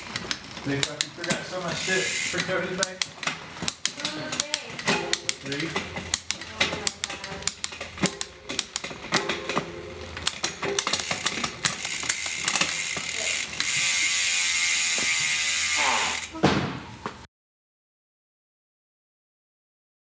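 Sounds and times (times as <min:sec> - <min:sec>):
ratchet-like mechanical clicking: 0:00.0 - 0:09.4, 0:10.1 - 0:16.4.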